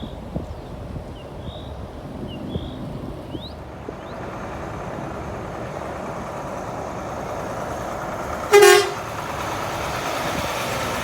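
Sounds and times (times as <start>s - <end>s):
truck engine running: 3.7s - 11.0s.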